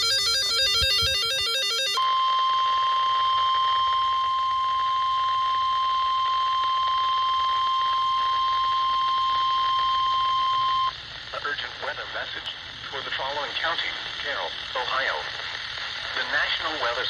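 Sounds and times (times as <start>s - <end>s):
steady high alarm beep: 0.0s - 11.0s
radio hiss: 8.0s - 17.0s.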